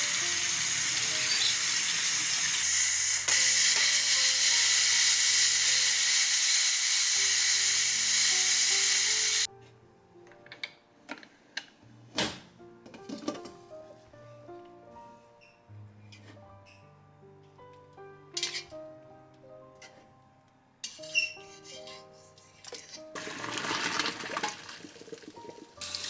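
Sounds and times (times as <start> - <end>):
loud steady kitchen hiss: 0.0 - 9.5, 25.8 - 26.0
background music: 0.0 - 26.0.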